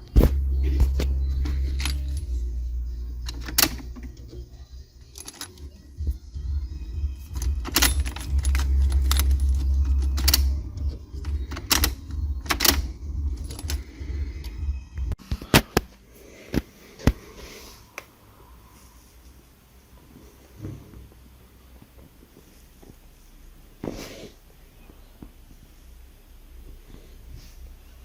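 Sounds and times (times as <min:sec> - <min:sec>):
low rumble: 0:00.0 - 0:15.2
keys jangling: 0:01.4 - 0:02.4, 0:05.1 - 0:05.8, 0:07.2 - 0:14.6.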